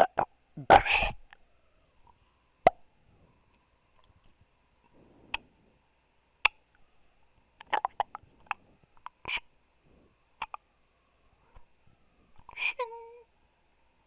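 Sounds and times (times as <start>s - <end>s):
mouth clicks and pops: 2.6s - 2.8s, 7.6s - 9.4s, 10.4s - 10.6s.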